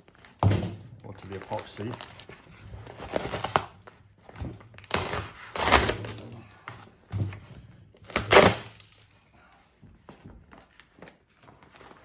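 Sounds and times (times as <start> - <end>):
peel ply tearing off: 2.0 - 3.9, 4.8 - 6.4, 8.0 - 9.0.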